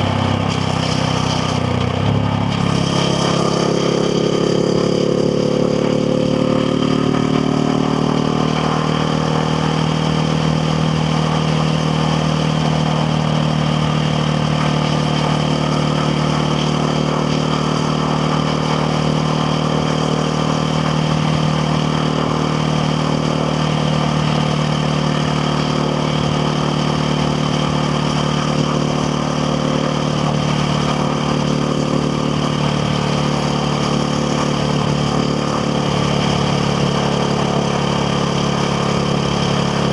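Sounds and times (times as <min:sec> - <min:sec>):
single-cylinder motorcycle engine running: 0:00.0 - 0:39.9.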